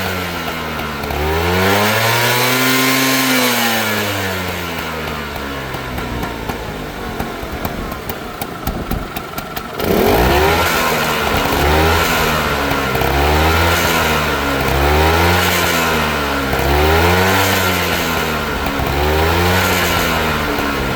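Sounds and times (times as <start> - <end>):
fast clicking engine rattle: 0.0 - 20.9
scooter engine idling and revving: 0.0 - 20.9.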